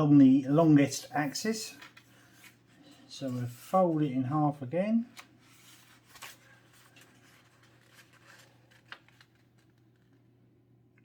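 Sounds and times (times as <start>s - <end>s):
paper rustling and crinkling: 1.2s - 4.2s, 4.9s - 10.3s.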